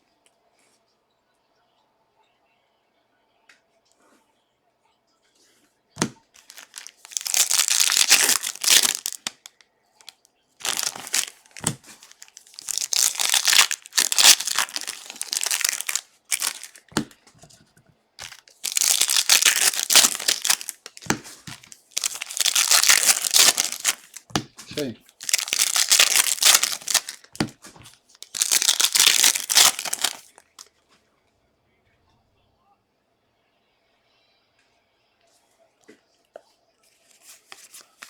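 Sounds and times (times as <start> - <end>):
foil wrappers crinkling and tearing: 6.0 - 9.6, 10.6 - 17.2, 18.2 - 30.7.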